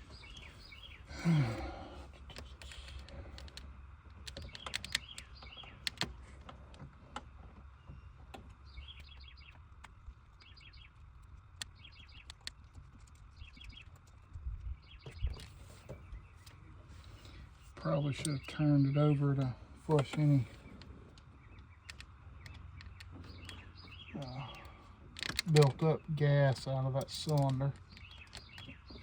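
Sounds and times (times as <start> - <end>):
small birds chirping: 0.0 - 29.0.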